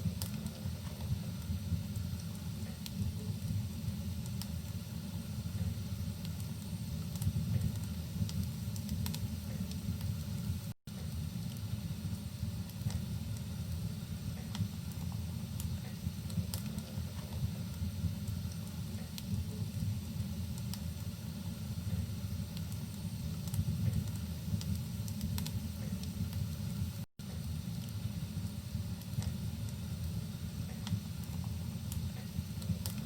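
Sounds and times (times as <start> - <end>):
wood fire crackling and popping: 0.0 - 33.0.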